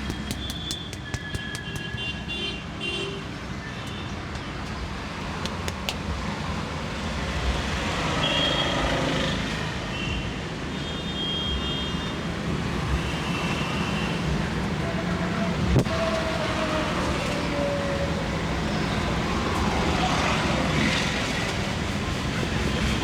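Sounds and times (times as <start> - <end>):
low rumble of passing vehicles: 11.4 - 23.0.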